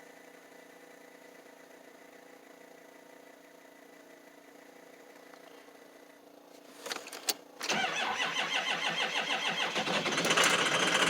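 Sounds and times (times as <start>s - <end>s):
diesel engine cranking and running rough: 7.6s - 11.0s.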